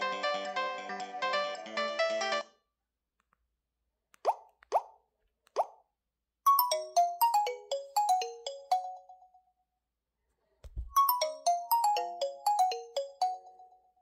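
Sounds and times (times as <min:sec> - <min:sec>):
phone ringtone melody: 0:06.5 - 0:09.4, 0:11.0 - 0:13.9.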